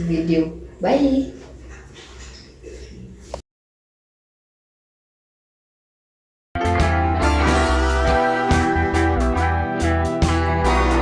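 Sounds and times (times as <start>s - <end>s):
guitar music: 6.6s - 11.0s
heavy sustained bass line: 6.6s - 11.0s.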